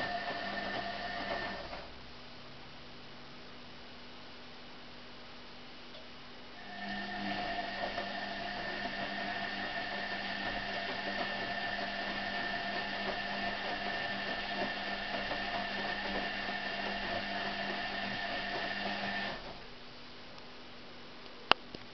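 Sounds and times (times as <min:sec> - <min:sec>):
washing machine whirring: 0:00.0 - 0:02.1, 0:06.6 - 0:19.8
faint constant whine: 0:01.7 - 0:07.2, 0:19.4 - 0:21.9.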